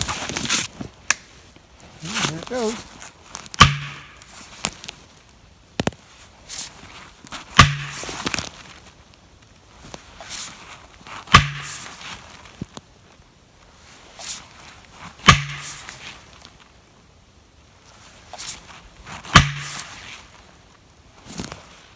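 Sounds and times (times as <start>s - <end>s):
axe pounding plastic wedge: 3.6s - 4.2s, 7.6s - 8.1s, 11.4s - 11.9s, 15.3s - 15.8s, 19.4s - 19.9s.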